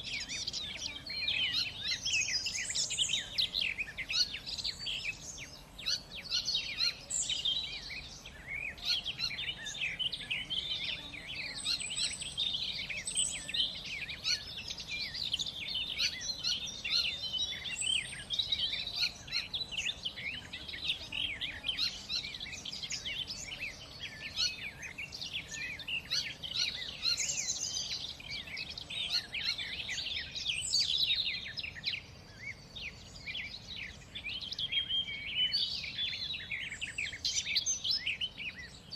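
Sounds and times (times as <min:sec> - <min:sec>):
small birds chirping and singing: 0:00.0 - 0:38.9.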